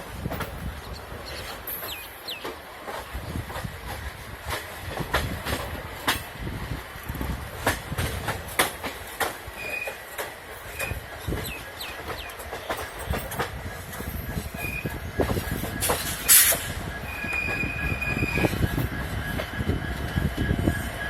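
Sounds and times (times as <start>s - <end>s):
train rumbling on track: 0.0s - 21.0s
wheels clacking and knocking: 0.0s - 21.0s
high-pitched wheel squeals: 16.2s - 18.9s.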